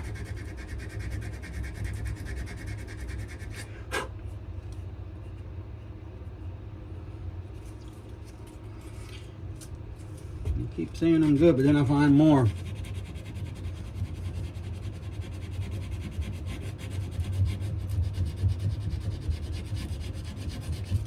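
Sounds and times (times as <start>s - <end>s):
sandpaper rubbing on wood: 0.0s - 3.7s, 11.0s - 21.0s
steady low rumble: 4.2s - 12.8s.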